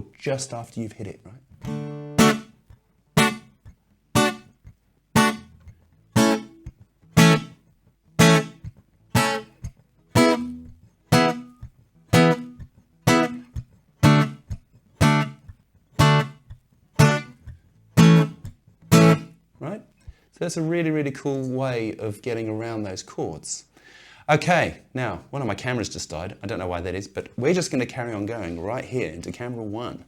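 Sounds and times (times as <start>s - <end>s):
acoustic guitar muted chord stabs: 1.7s - 2.6s.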